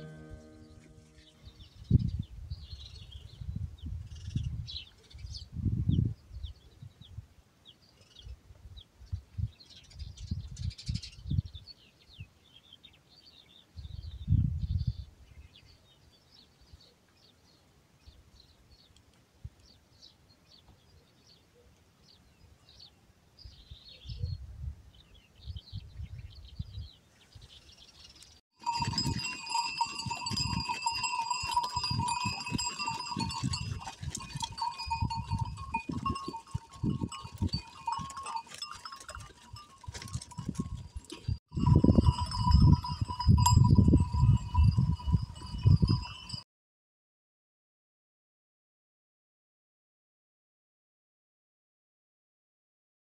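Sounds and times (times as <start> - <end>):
animal herd thumping: 28.6 - 43.1
livestock bells clanking: 28.6 - 46.4.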